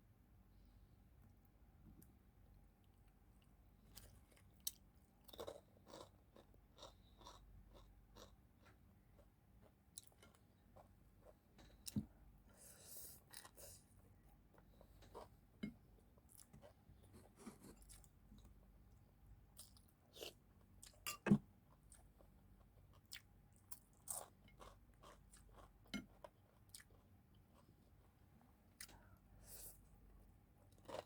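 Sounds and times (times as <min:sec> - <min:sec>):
chewing and crunching: 0:03.8 - 0:12.0, 0:21.7 - 0:27.8, 0:30.7 - 0:31.0.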